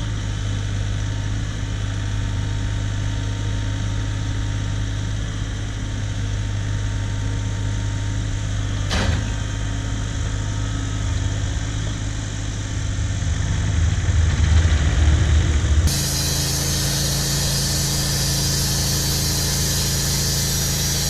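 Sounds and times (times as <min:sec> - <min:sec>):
engine rumbling: 0:08.8 - 0:21.0.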